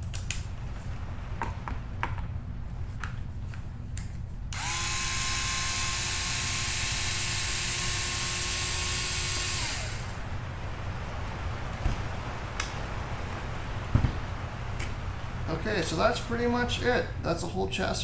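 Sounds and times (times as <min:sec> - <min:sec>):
electric screwdriver running: 0:04.6 - 0:10.3.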